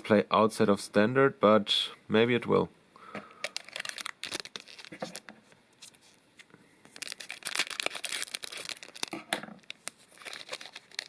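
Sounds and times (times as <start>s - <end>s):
foil wrapper crinkling: 3.4s - 5.3s, 6.9s - 11.0s.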